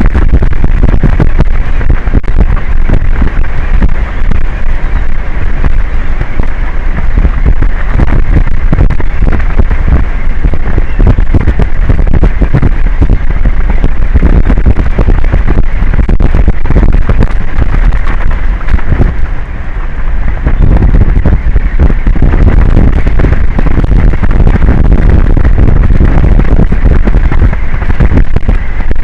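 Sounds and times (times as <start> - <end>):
strong wind buffeting microphone: 0.0 - 29.0.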